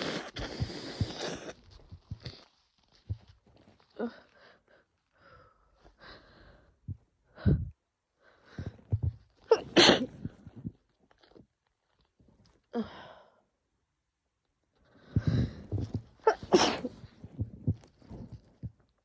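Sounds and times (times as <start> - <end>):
gasping breaths: 0.0 - 1.6, 14.9 - 18.7
woman sneezing: 9.5 - 10.2, 16.3 - 17.0.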